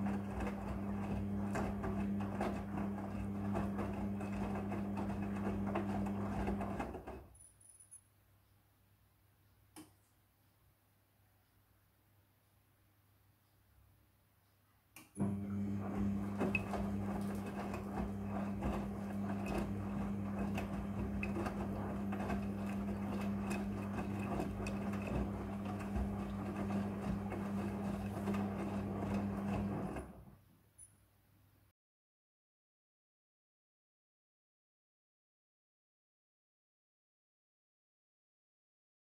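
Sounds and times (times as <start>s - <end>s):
washing machine hum: 0.0s - 7.4s, 15.0s - 30.4s.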